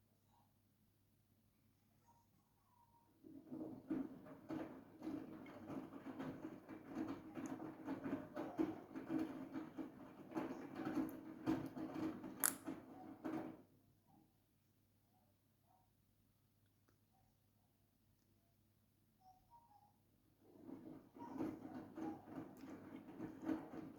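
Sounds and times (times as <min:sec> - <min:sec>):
washing machine motor hum: 0:03.2 - 0:13.7, 0:20.4 - 0:23.9
tumbling load clattering and swishing: 0:20.5 - 0:23.9.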